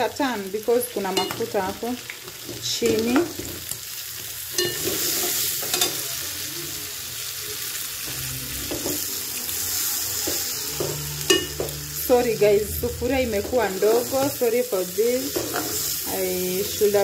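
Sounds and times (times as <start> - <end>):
onions sizzling in oil: 0.0 - 17.0.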